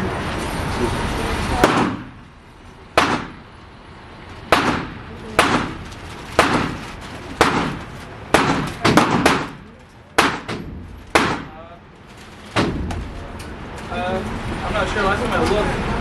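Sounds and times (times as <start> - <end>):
gunshots echoing: 1.6 - 2.2, 3.0 - 3.5, 4.5 - 11.6.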